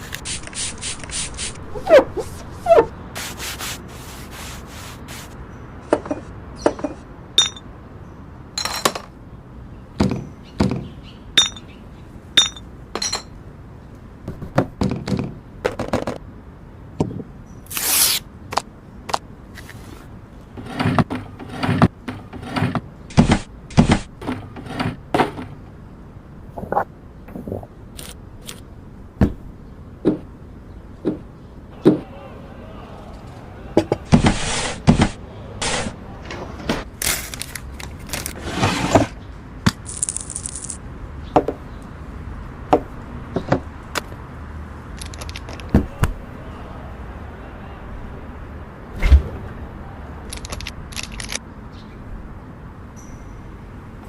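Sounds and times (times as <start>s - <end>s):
packages rubbing and scraping: 0.0s - 5.4s, 36.9s - 39.2s.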